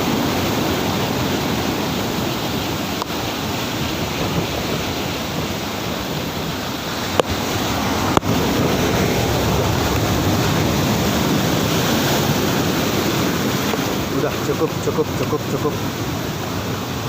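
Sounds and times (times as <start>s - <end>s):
rough surf breaking: 0.0s - 17.0s
wind on microphone: 0.0s - 17.0s.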